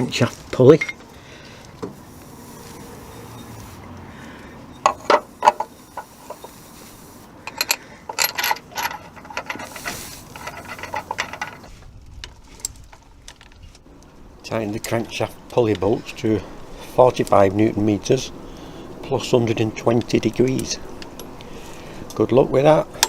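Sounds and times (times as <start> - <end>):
metal clinks of bolts and tools: 4.7 - 6.6, 7.4 - 11.7.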